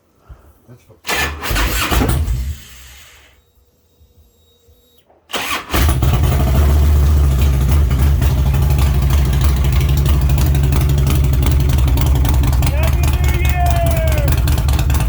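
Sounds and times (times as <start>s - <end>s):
motorcycle engine running: 5.8s - 15.0s.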